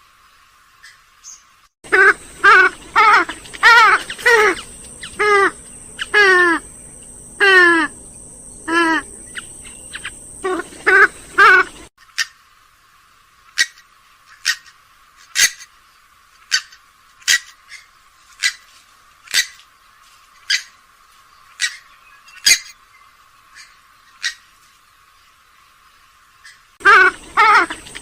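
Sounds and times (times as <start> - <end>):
swamphen calling: 0.8 - 12.5, 13.5 - 15.8, 16.4 - 18.7, 20.4 - 20.8, 21.4 - 24.6, 26.4 - 28.0.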